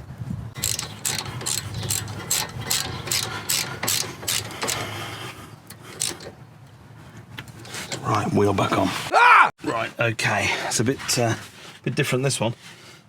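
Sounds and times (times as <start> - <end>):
socket ratchet clicking: 0.6 - 5.0, 5.9 - 6.3.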